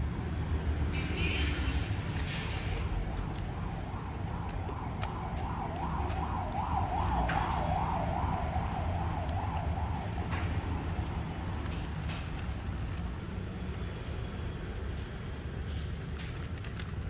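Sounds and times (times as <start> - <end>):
steady low rumble: 0.0 - 15.2
emergency siren warbling: 1.0 - 12.6.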